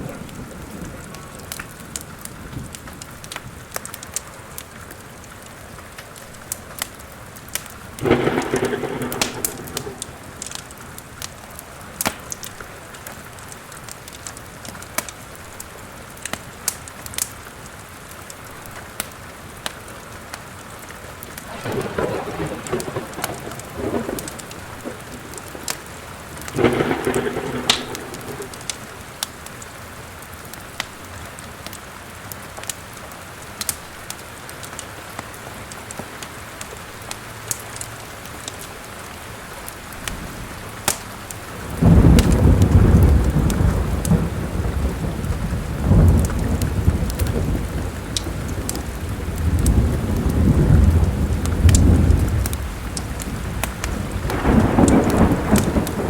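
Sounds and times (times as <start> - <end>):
thunder rolling: 0.0 - 2.8, 8.0 - 11.3, 21.3 - 29.5, 41.4 - 56.0
steady rain: 0.0 - 56.0
wood fire crackling: 0.0 - 56.0.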